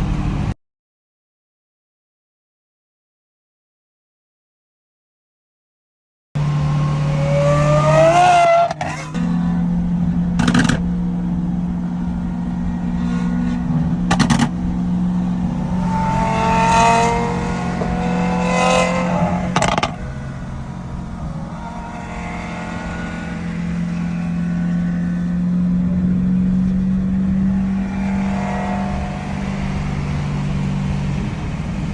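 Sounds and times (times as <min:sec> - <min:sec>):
sports car engine revving: 0:06.4 - 0:31.9
exhaust cracks: 0:10.2 - 0:31.9.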